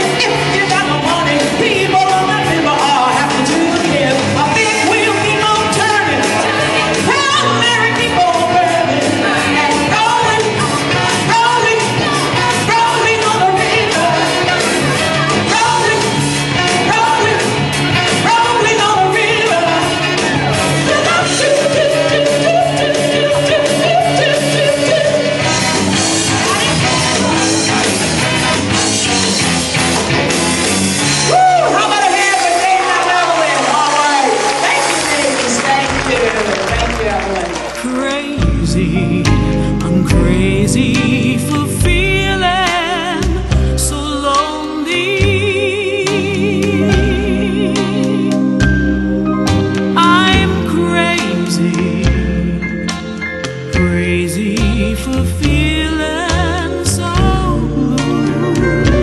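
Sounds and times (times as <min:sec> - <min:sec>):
live rock band playing: 0:00.0 - 0:32.5, 0:34.5 - 0:59.0
person singing: 0:37.7 - 0:59.0.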